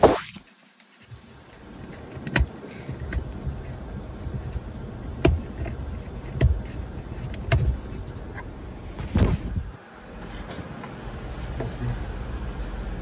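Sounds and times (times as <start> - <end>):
car parts clicking and knocking: 0.8 - 9.6
steady low rumble: 2.8 - 13.0.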